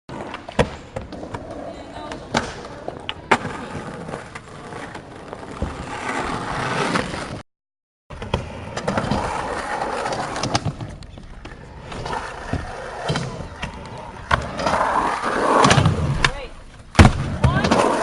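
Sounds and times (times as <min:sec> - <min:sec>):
skateboard wheels rolling on pavement: 0:00.1 - 0:07.4, 0:08.1 - 0:18.0
skateboard clack: 0:00.2 - 0:07.3.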